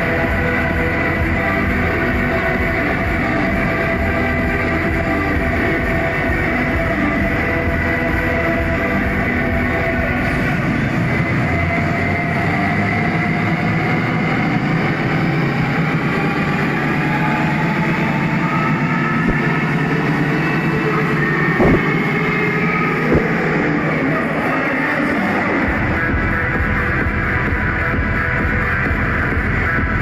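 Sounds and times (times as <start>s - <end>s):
short thumps: 21.6s - 22.2s, 23.0s - 23.5s.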